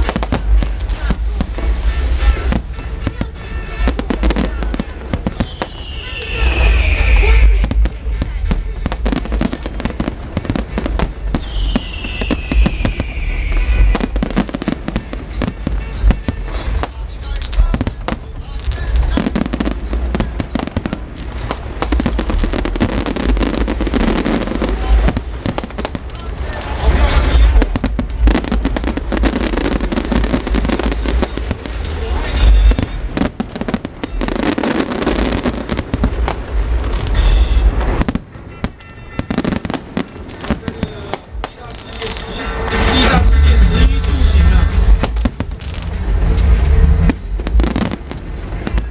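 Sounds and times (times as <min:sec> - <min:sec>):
fireworks bangs and crackles: 0:00.0 - 0:48.9
heavy low rumble: 0:00.0 - 0:48.9
whistle sliding down in pitch: 0:05.4 - 0:07.6, 0:11.4 - 0:14.1
low rumble: 0:39.8 - 0:48.9.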